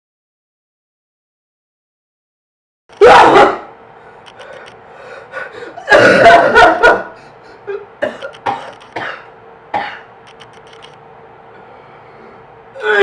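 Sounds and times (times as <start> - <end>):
person coughing: 5.1 - 10.1
person sneezing: 5.1 - 10.1.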